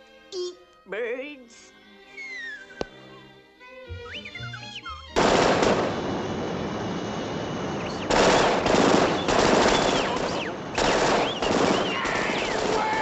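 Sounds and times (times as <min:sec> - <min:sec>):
soft orchestral music: 0:00.0 - 0:05.2
whistling glides: 0:02.1 - 0:03.2, 0:03.9 - 0:05.2, 0:06.9 - 0:13.0.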